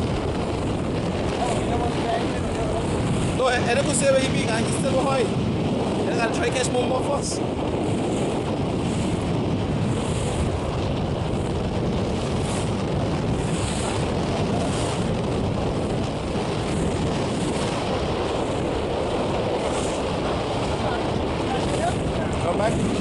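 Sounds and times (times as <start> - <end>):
sea water washing: 0.0 - 23.0
wind buffeting microphone: 0.0 - 23.0.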